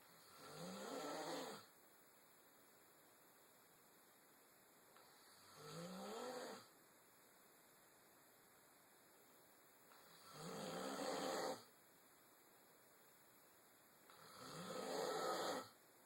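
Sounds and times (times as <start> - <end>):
person snoring: 0.2 - 1.7, 5.0 - 6.7, 10.0 - 11.7, 14.1 - 15.7.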